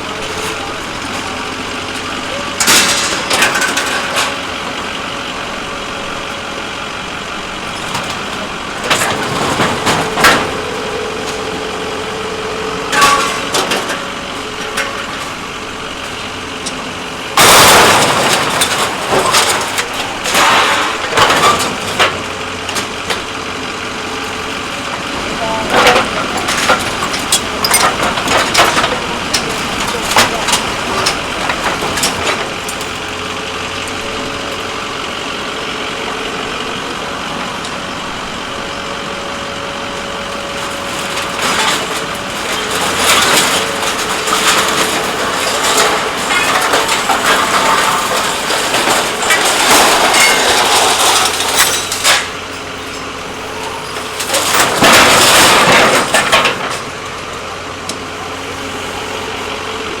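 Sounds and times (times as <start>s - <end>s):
truck engine idling: 0.0s - 60.0s.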